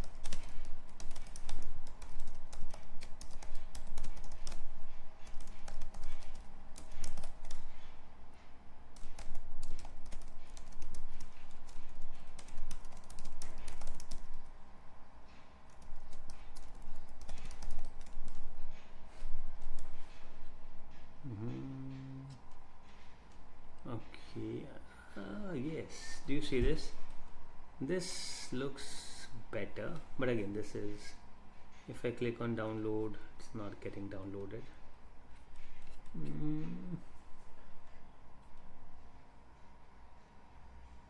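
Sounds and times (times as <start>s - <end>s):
computer keyboard typing: 0.0s - 7.9s, 8.9s - 14.5s, 15.7s - 18.5s, 19.6s - 20.1s.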